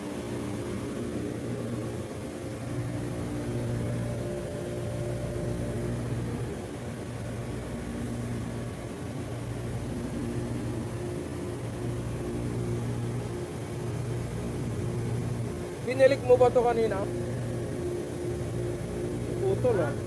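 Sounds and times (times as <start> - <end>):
refrigeration unit humming: 0.0 - 20.0.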